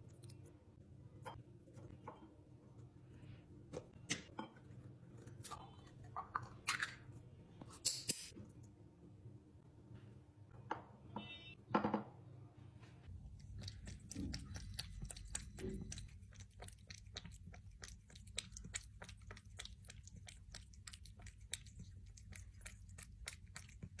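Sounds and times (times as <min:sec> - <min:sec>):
cat crunching food: 0:13.1 - 0:24.0.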